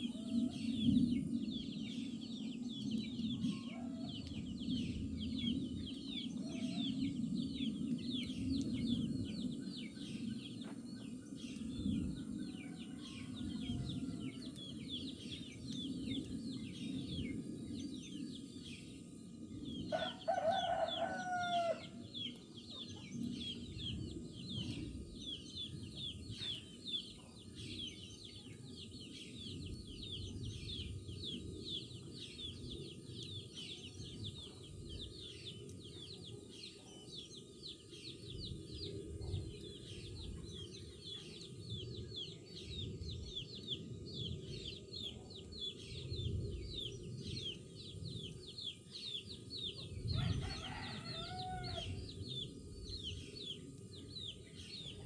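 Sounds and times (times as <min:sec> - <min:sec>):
small birds chirping: 0:00.0 - 0:55.0
rooster crowing: 0:19.9 - 0:22.0, 0:50.1 - 0:52.1.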